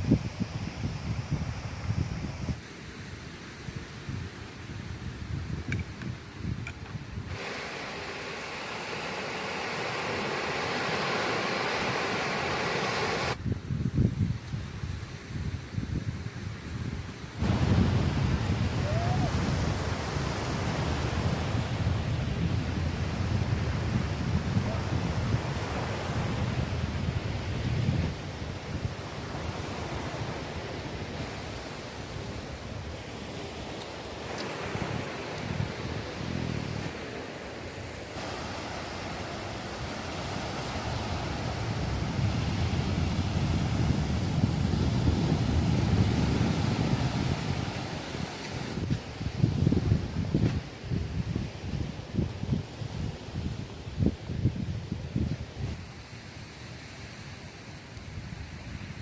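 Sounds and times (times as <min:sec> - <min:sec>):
wind buffeting microphone: 0:00.0 - 0:02.6, 0:03.7 - 0:56.2
steady rushing hiss: 0:05.8 - 0:13.4, 0:17.2 - 0:51.7.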